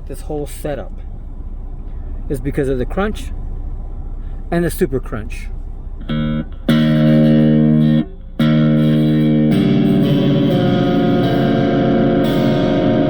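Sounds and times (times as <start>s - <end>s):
distorted electric guitar: 6.0s - 13.0s.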